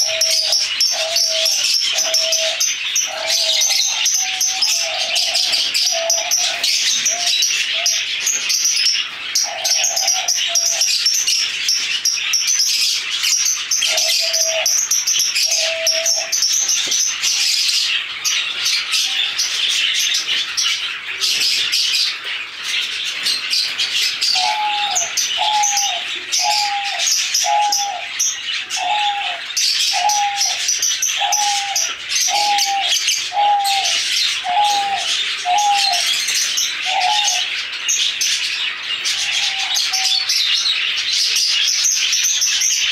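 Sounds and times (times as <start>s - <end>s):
dove cooing: 0.0s - 11.1s, 13.8s - 20.4s, 24.2s - 37.7s, 39.0s - 40.8s
birds chattering and chirping: 0.0s - 42.9s.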